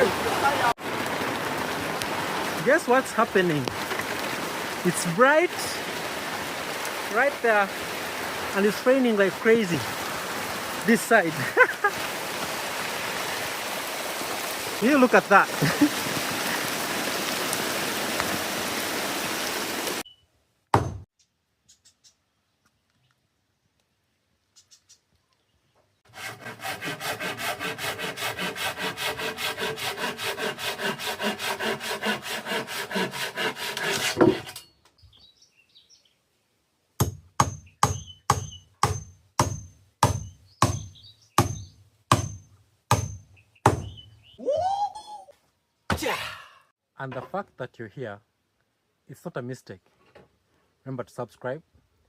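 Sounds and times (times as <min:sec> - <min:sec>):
heavy rain: 0:00.0 - 0:20.0
sharp knocks: 0:20.7 - 0:21.1, 0:37.0 - 0:43.9
rasping strokes: 0:26.1 - 0:34.7.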